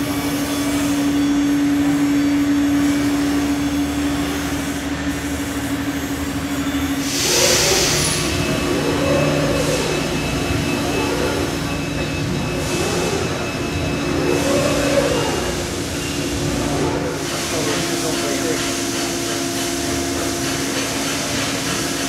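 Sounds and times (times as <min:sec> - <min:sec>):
router spindle whine: 0:00.0 - 0:19.2
hiss burst: 0:07.0 - 0:08.4
machine cutting foam: 0:07.0 - 0:19.1.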